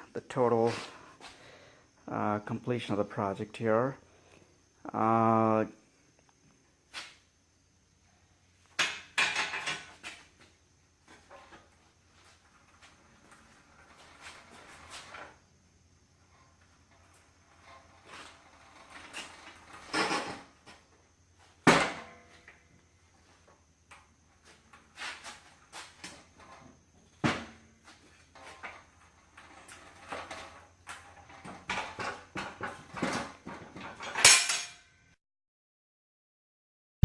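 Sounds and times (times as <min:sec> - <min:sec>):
clatter of things being handled: 0:08.8 - 0:10.5, 0:24.4 - 0:34.8.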